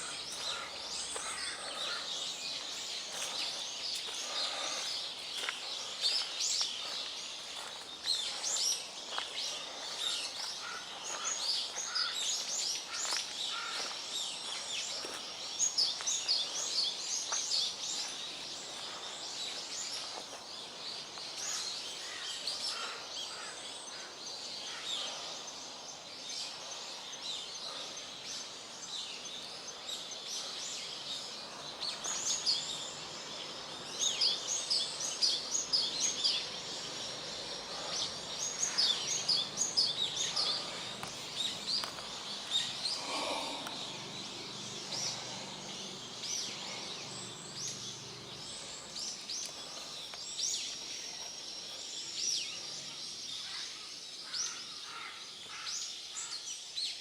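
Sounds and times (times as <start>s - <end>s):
small birds chirping: 0.0s - 57.0s.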